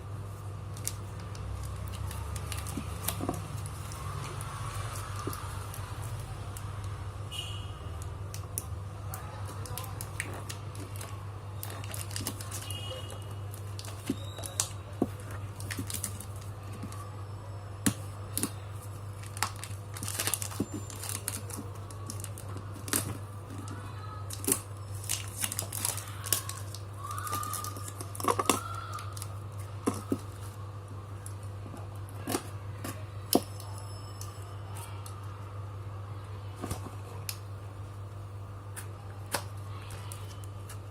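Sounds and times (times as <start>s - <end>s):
packaging tearing and crinkling: 0.7s - 6.6s, 8.3s - 17.0s, 17.9s - 30.6s.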